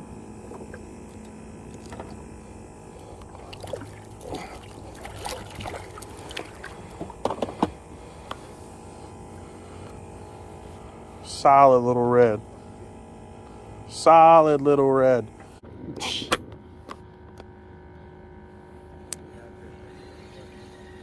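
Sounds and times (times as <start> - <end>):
water trickling: 3.0 - 7.0.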